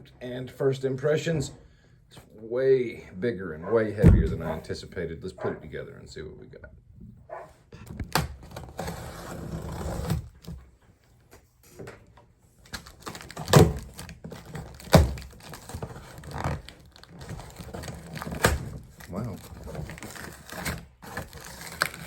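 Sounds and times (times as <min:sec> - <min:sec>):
heavy thuds: 0:04.0 - 0:04.8
cardboard box rustling and scraping: 0:08.4 - 0:10.6.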